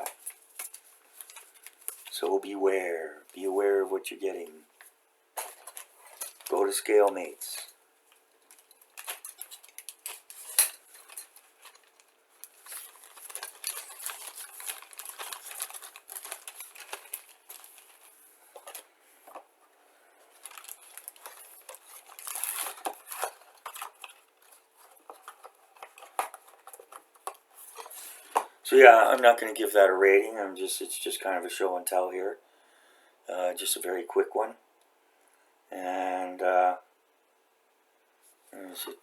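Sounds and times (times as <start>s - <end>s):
packaging rustling: 0.0s - 2.2s, 5.4s - 29.4s.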